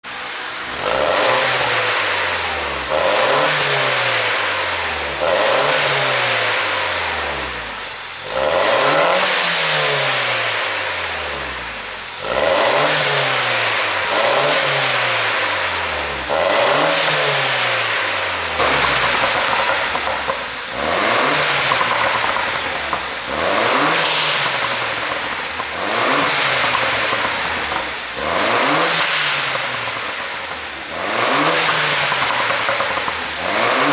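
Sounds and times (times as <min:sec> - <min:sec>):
car engine revving: 0:00.0 - 0:33.9
exhaust pops and crackles: 0:16.2 - 0:33.9.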